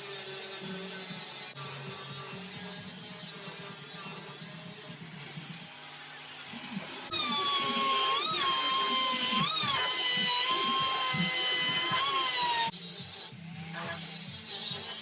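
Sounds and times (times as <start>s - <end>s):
power tool whining: 5.8s - 15.0s.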